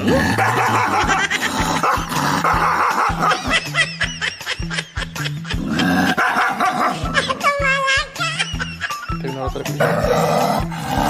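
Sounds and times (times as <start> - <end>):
dogs yipping and barking: 0.3 - 4.4, 6.0 - 8.9
background music with beat: 1.2 - 11.0.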